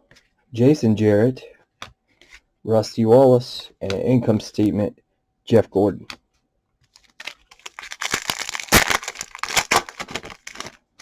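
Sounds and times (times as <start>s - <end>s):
wrapper tearing and crinkling: 7.0s - 10.8s.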